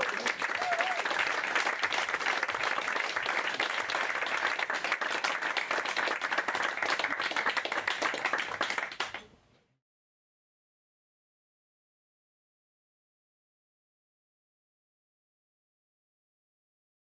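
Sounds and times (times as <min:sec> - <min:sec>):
audience applauding: 0:00.0 - 0:09.3.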